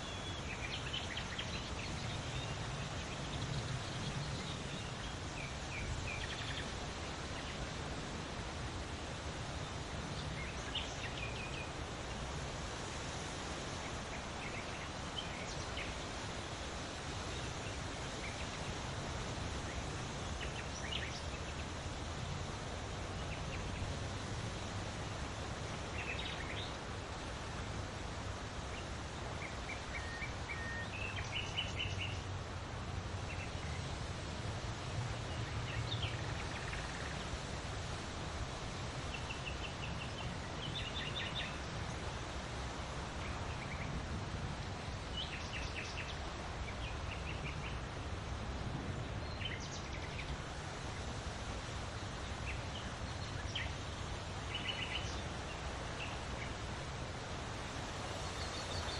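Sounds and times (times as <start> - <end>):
wind blowing: 50.3 - 58.9
birds chirping: 52.2 - 58.9.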